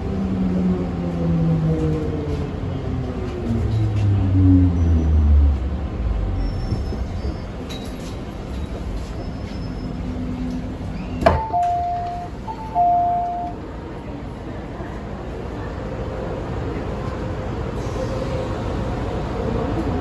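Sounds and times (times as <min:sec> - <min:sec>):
train low steady hum: 0:00.0 - 0:20.0
long electronic beeps: 0:11.4 - 0:13.6.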